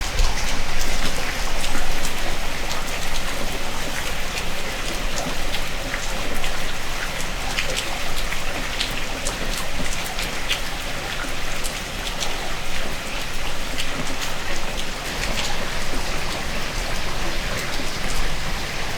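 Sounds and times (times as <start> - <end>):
heavy rain falling: 1.1 - 4.8, 15.0 - 18.9.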